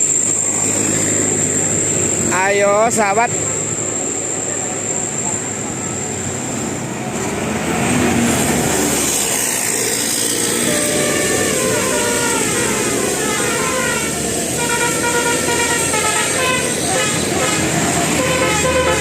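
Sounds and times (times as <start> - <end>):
bus engine and road noise: 0.0 - 19.0
multi-tone horn melody: 10.5 - 19.0.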